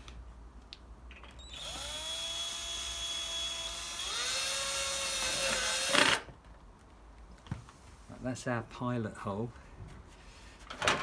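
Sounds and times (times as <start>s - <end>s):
electric drill whine: 1.4s - 6.3s.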